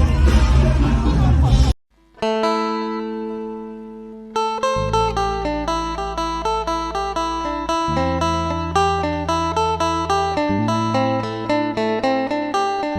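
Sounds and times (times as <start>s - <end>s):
low held bass: 0.0s - 1.8s, 4.8s - 11.8s
plucked-string melody: 2.1s - 12.9s.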